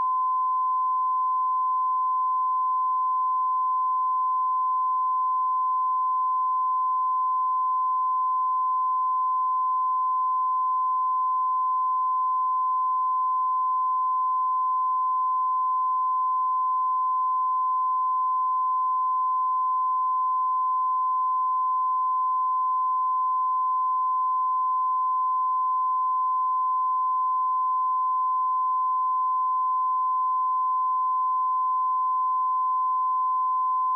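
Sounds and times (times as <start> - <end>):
sine-wave test tone: 0.0 - 33.9.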